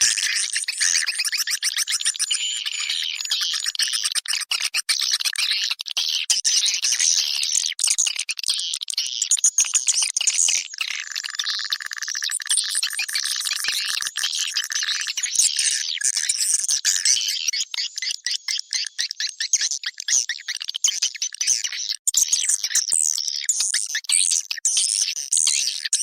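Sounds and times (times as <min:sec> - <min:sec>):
swiftlets chirping and twittering: 0:00.0 - 0:05.6.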